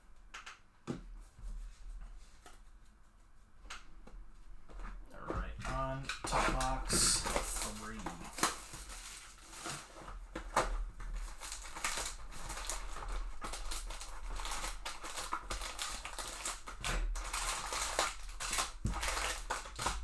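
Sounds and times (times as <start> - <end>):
small clicks and taps: 0.2 - 1.0
cardboard and wrappers rustling: 1.2 - 20.0.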